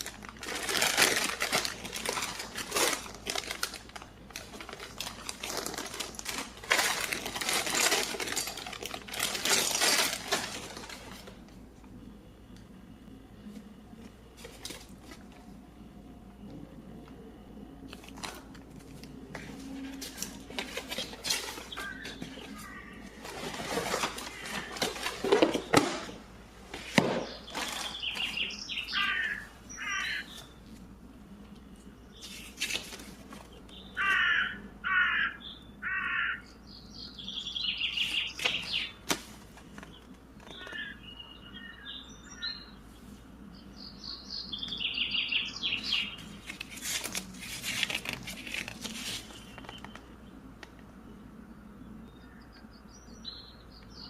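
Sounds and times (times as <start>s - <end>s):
plastic packaging rustling: 0.0s - 11.6s, 14.0s - 15.6s, 17.9s - 29.4s, 32.2s - 34.1s, 37.9s - 40.9s, 45.7s - 50.2s
short bird calls: 27.3s - 30.5s, 40.5s - 42.8s.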